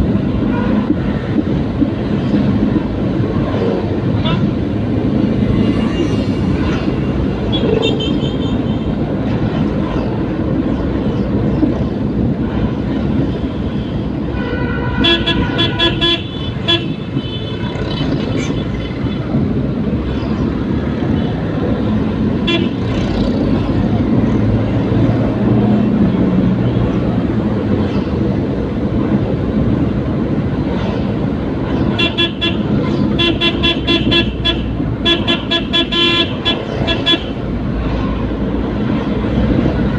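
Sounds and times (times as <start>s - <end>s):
engine and road noise: 0.0s - 39.9s
vehicle horns tooting: 13.4s - 17.8s, 22.4s - 22.8s, 31.9s - 37.4s.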